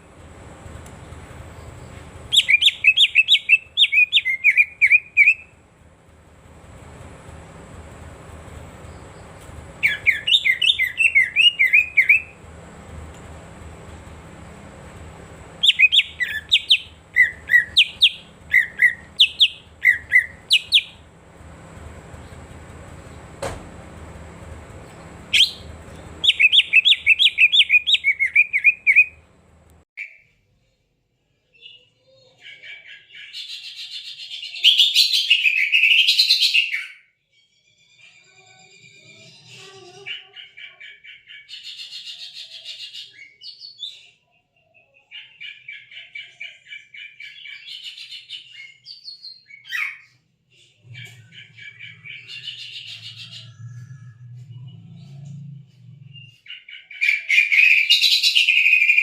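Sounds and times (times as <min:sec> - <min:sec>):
low hum: 0:00.0 - 0:29.8, 0:50.7 - 0:56.5
bird chirping: 0:01.4 - 0:05.6, 0:08.8 - 0:12.4, 0:15.6 - 0:21.1, 0:24.8 - 0:29.2, 0:31.5 - 0:59.0.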